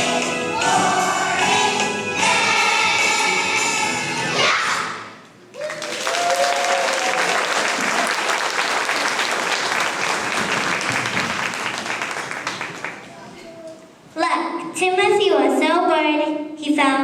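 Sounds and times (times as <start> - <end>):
children's choir singing: 0.0 - 5.0
audience applause: 5.6 - 13.2.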